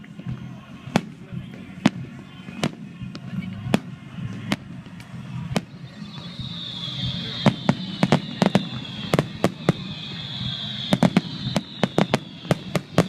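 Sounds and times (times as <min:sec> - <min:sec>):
fireworks cracking: 0:00.0 - 0:13.0
falling whistling tone: 0:05.4 - 0:13.0.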